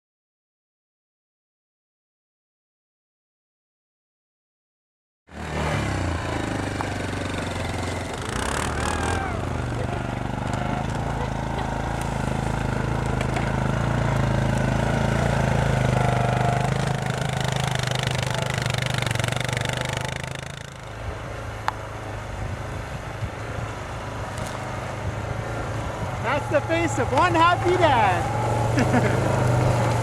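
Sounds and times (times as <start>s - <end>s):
atv engine idling: 6.0s - 30.0s.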